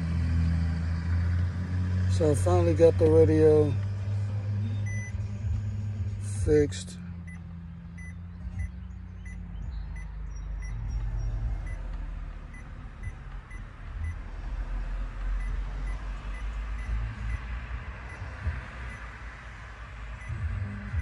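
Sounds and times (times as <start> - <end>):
low car rumble: 0.0 - 21.0
car warning chime beeping: 4.6 - 5.3, 7.2 - 9.4, 10.0 - 11.0, 11.6 - 11.9, 12.5 - 14.2, 15.4 - 19.1, 20.2 - 21.0.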